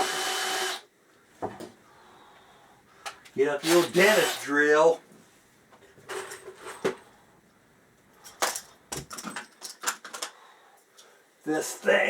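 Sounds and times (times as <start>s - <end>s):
drill attachment clicks and rattles: 3.6s - 4.5s.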